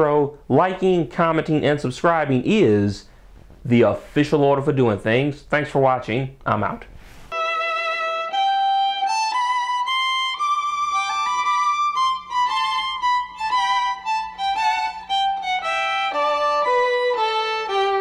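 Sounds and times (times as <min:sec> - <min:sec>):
solo violin melody: 0:07.3 - 0:18.0.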